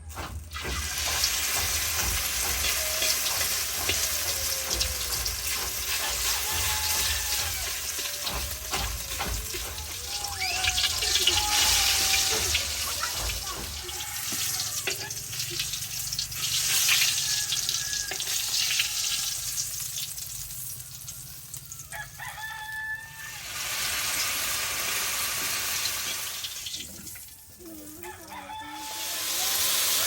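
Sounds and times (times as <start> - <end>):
rooster crowing: 2.6 - 15.3, 16.6 - 19.7, 20.9 - 23.7, 28.0 - 30.0.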